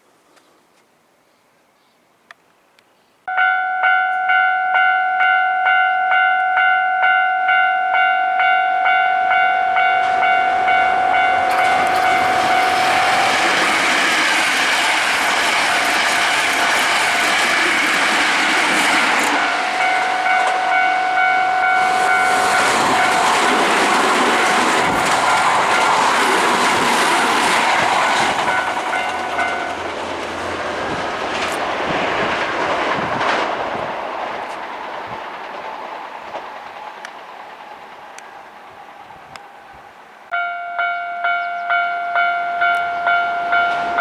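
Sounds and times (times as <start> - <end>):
steady ringing tone: 3.3 - 13.5, 19.4 - 23.4
electric train wheels clattering: 4.1 - 39.6, 41.1 - 44.0.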